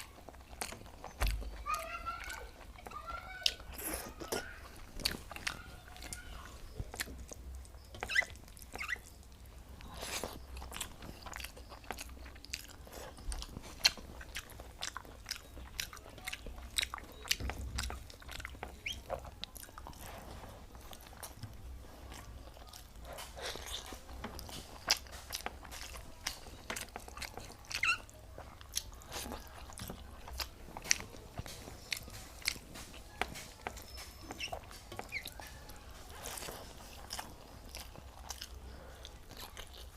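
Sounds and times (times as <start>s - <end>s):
person chewing with mouth smacks: 0.0s - 39.9s.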